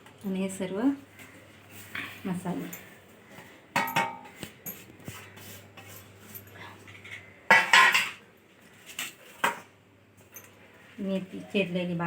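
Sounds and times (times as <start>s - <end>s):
dishes clattering: 3.7s - 4.4s, 7.0s - 8.3s
dishes and utensils clinking: 3.7s - 8.3s.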